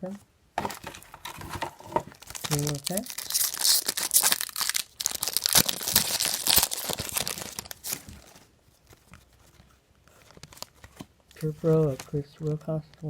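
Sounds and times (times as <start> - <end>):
cards being handled: 0.6 - 13.0
wrapper crinkling and tearing: 0.6 - 13.0.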